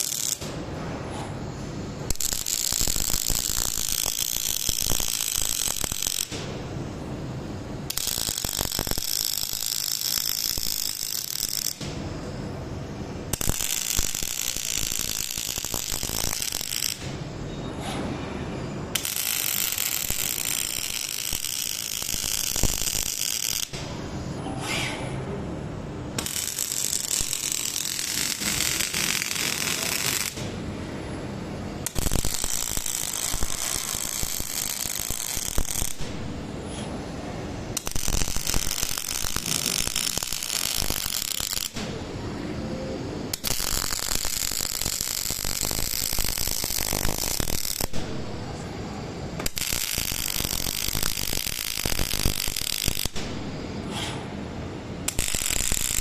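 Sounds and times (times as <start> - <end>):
welding arc crackling and hissing: 0.0 - 0.6, 2.0 - 6.6, 7.9 - 12.0, 13.3 - 17.3, 19.0 - 24.0, 26.2 - 30.5, 31.8 - 36.9, 37.6 - 42.1, 43.3 - 53.8, 55.0 - 56.0.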